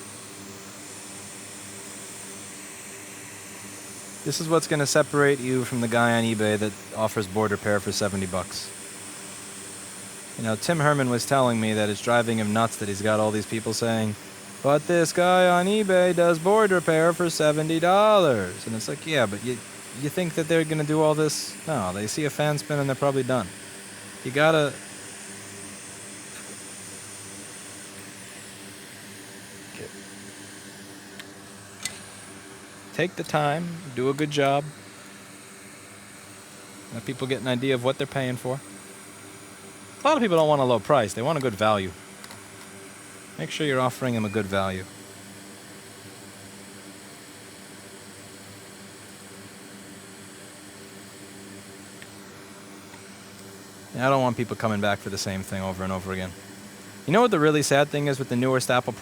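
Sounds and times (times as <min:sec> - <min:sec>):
fan blowing with low hum: 0:00.0 - 0:59.0
steady hiss: 0:00.0 - 0:59.0.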